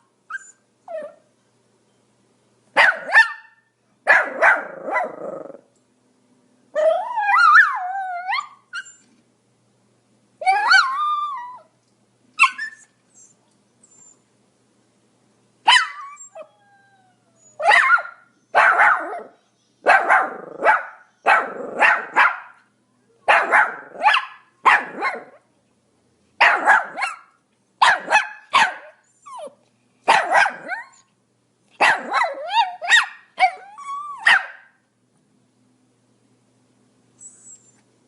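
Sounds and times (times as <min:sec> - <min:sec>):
small dog barking: 0:02.8 - 0:05.3, 0:15.6 - 0:16.2, 0:17.6 - 0:25.4, 0:26.4 - 0:29.5, 0:30.1 - 0:31.0, 0:31.8 - 0:34.8.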